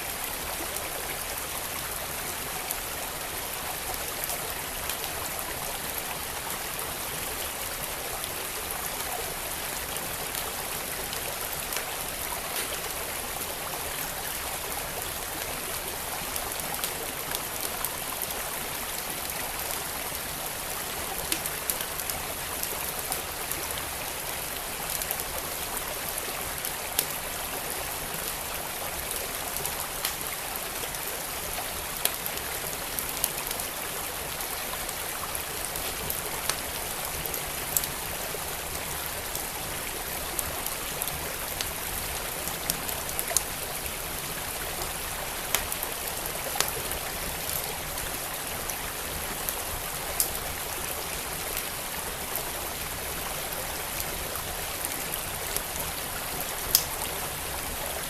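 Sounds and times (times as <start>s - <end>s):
stream flowing: 0.0s - 58.0s
wood fire crackling: 45.5s - 46.8s, 56.6s - 57.0s.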